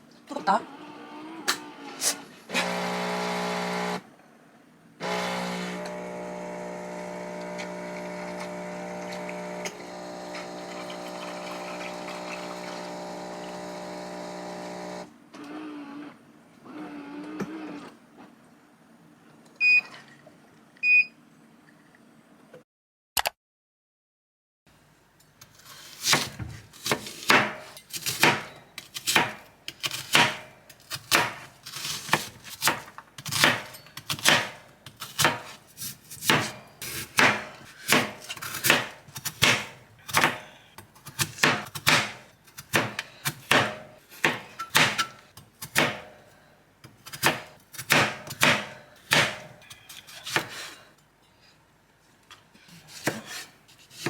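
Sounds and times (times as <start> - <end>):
knife chopping on cutting board: 26.0 - 46.2, 47.0 - 49.6, 50.2 - 50.7, 52.9 - 54.0.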